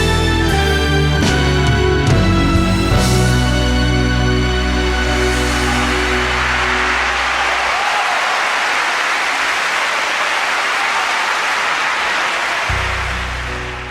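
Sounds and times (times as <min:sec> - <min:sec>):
held musical chord: 0:00.3 - 0:07.7
audience applauding: 0:04.9 - 0:13.9.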